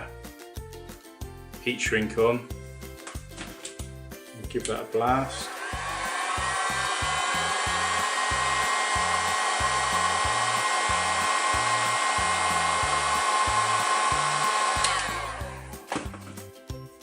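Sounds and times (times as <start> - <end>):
heat gun blowing: 5.2 - 16.0.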